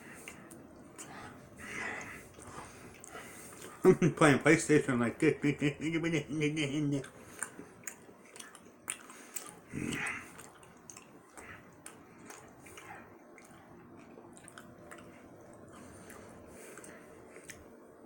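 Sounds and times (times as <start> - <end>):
chewing gummy candy: 2.0 - 3.8, 7.0 - 18.0.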